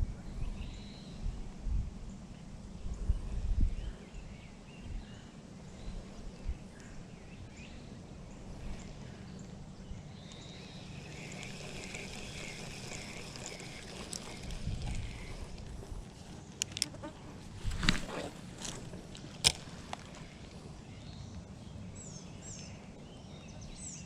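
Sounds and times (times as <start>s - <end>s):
wind rumble on microphone: 0.0s - 7.6s, 11.4s - 16.2s, 17.4s - 19.7s.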